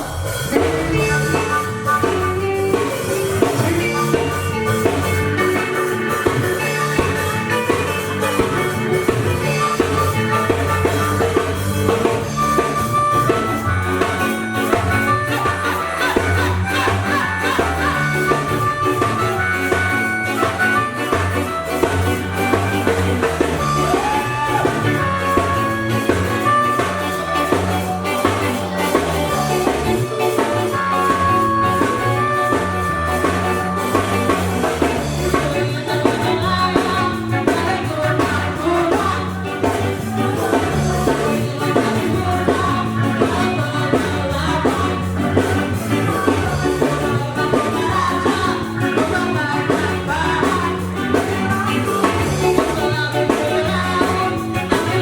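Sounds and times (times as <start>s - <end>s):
person singing: 0.0s - 55.0s
ska band playing: 0.0s - 55.0s.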